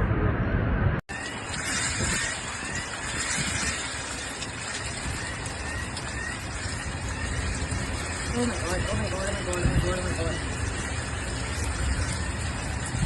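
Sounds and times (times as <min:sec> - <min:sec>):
heavy rain and wind: 0:01.1 - 0:13.0.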